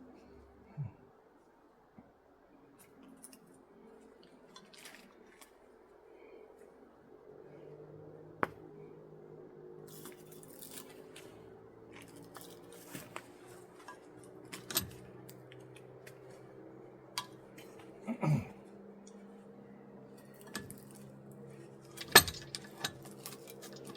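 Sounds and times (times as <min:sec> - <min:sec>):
faint steady hum: 0:00.0 - 0:23.9
hand tools clicking and scraping metal: 0:12.0 - 0:16.2, 0:17.2 - 0:17.9, 0:20.2 - 0:21.1, 0:21.7 - 0:23.9.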